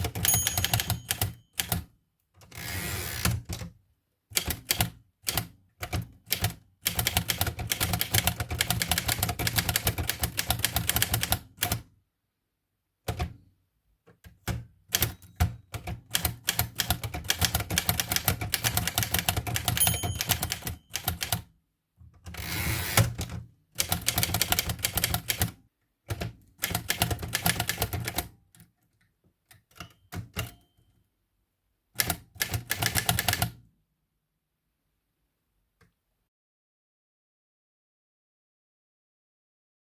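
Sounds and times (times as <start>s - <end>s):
typewriter carriage return: 0.0s - 1.8s, 14.9s - 21.4s
typewriter margin bell: 0.0s - 1.8s, 18.9s - 21.4s, 30.0s - 30.8s
typewriter typing: 0.0s - 1.9s, 4.4s - 11.8s, 14.4s - 21.5s, 22.3s - 28.3s, 32.0s - 33.6s.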